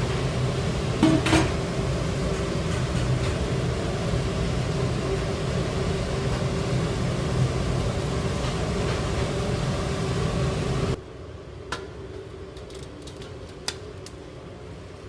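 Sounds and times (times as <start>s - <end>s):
machine drone with air rush: 0.0s - 11.3s.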